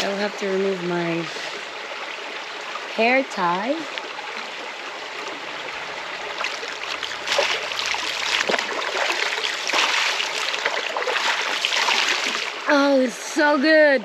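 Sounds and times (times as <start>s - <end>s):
river water flowing: 0.0s - 14.0s
splashing from wading: 5.3s - 12.7s.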